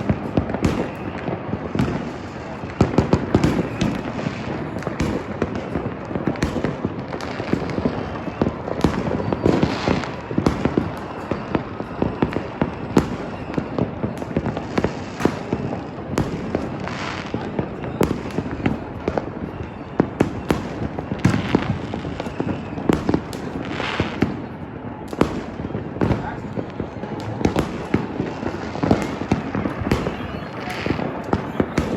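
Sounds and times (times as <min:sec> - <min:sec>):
fireworks crackling bangs: 0:00.0 - 0:31.9.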